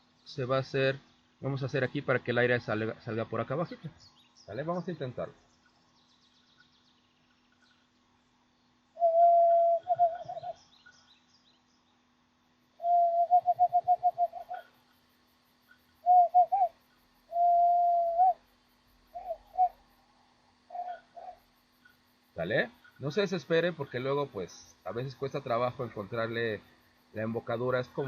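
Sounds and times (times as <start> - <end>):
hand whistle hooting: 9.0 - 10.6, 12.8 - 14.6, 17.3 - 18.4.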